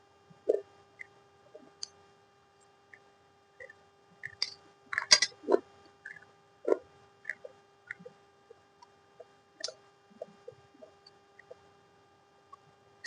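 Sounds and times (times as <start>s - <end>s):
faint steady hum: 0.0s - 13.0s
small clicks and soft taps: 2.6s - 11.7s.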